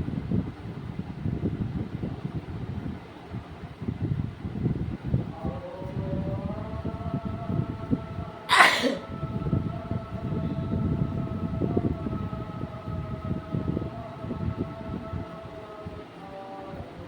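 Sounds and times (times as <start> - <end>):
steady hum of held tones: 0.0 - 17.0
loud sneeze: 8.5 - 9.1.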